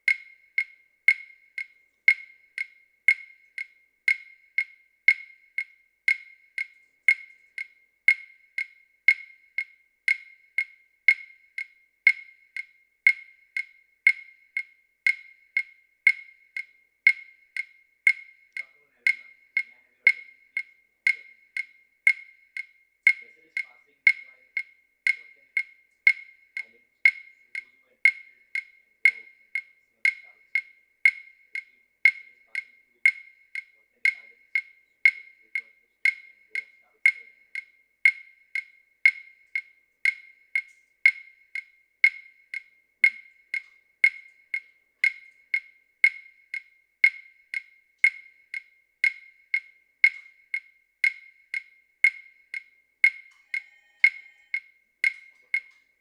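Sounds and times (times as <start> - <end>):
wooden clicks keeping time: 0.0 - 56.0.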